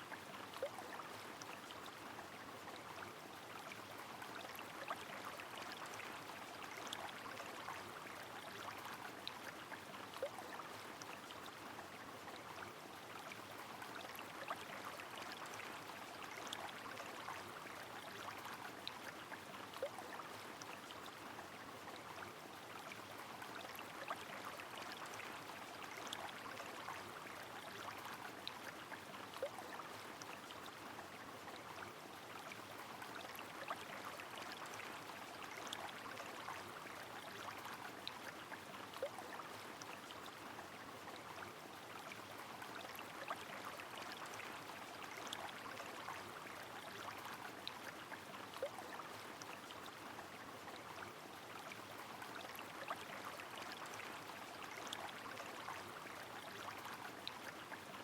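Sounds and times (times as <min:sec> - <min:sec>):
river flowing: 0:00.0 - 0:58.0.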